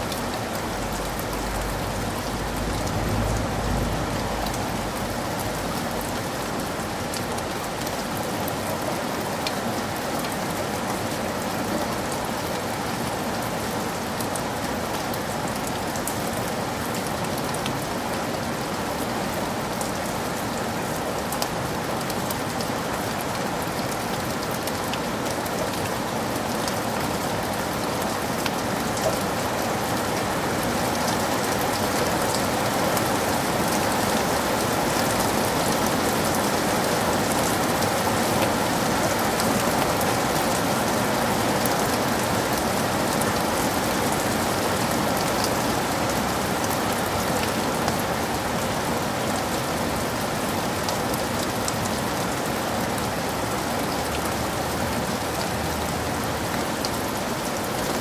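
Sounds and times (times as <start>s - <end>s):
heavy rain: 0.0s - 58.0s.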